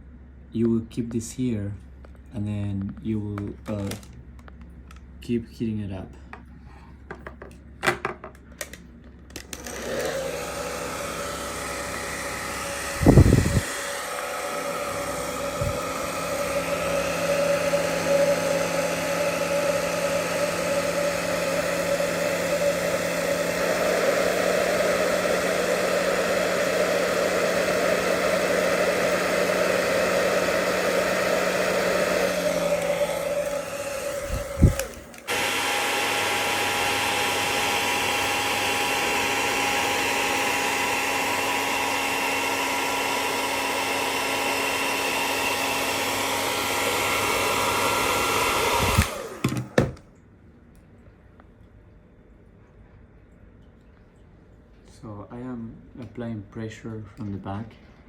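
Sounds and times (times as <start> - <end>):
hair dryer running: 8.6 - 50.0.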